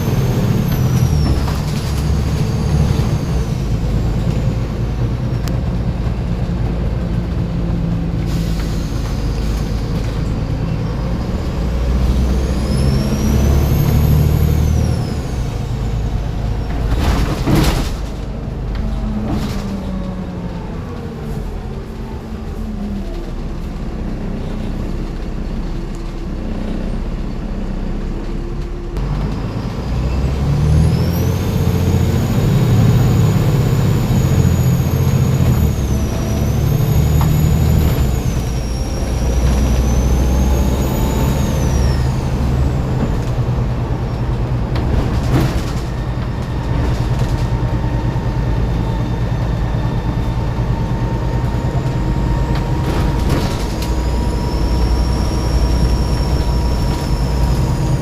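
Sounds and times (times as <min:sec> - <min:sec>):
bus diesel engine pulling: 0:00.0 - 0:58.0
high turbo whistle: 0:53.6 - 0:58.0.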